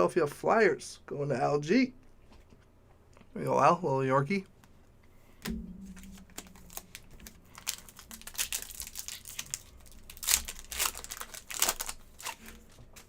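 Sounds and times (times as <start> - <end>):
wrapper crinkling: 6.3 - 13.0.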